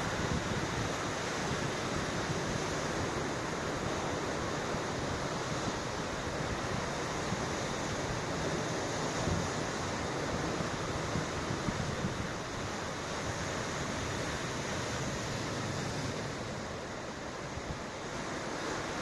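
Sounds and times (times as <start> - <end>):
ocean waves washing ashore: 0.0 - 19.0
wind on microphone: 6.6 - 12.6.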